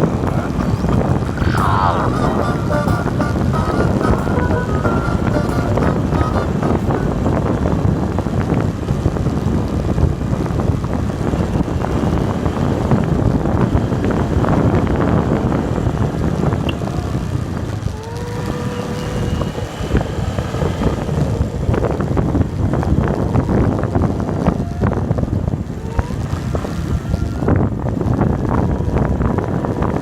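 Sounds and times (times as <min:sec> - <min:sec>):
wind buffeting microphone: 0:00.0 - 0:30.0.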